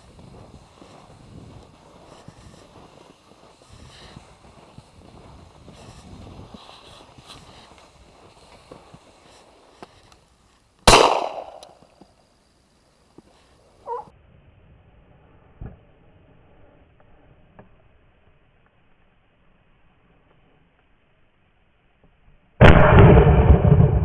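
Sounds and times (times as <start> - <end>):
wind on microphone: 0.0 - 9.1
rustling movement: 0.0 - 12.0, 13.1 - 14.1
gunshot: 10.9 - 11.8, 22.6 - 24.0.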